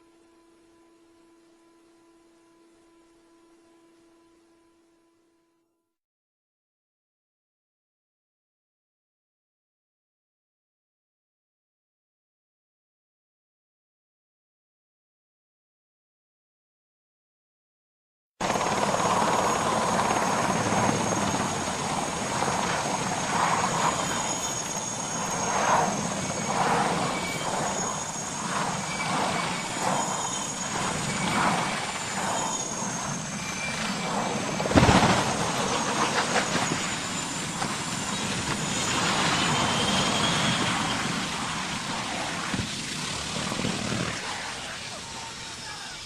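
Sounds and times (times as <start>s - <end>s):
faint high whine: 0.0s - 6.0s, 18.4s - 46.0s
aircraft engine noise: 18.4s - 46.0s
sharp loud bang: 34.7s - 35.4s.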